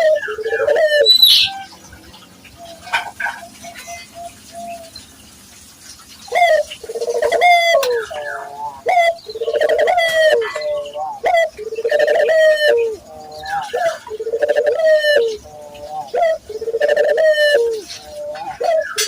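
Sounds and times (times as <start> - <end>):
dove cooing: 0.0 - 1.7, 6.3 - 19.0.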